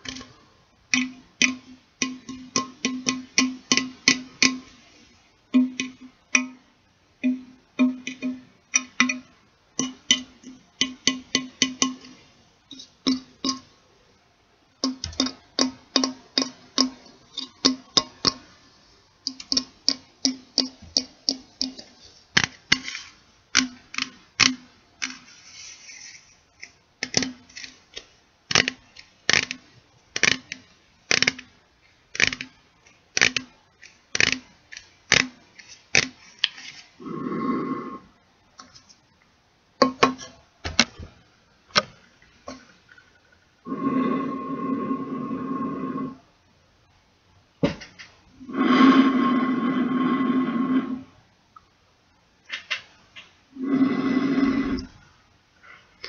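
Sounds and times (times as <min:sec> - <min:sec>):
fingers tapping metal can: 0:00.0 - 0:04.8, 0:05.5 - 0:06.6, 0:07.2 - 0:13.7, 0:14.8 - 0:18.5, 0:19.2 - 0:25.3, 0:27.0 - 0:27.8, 0:28.5 - 0:36.6.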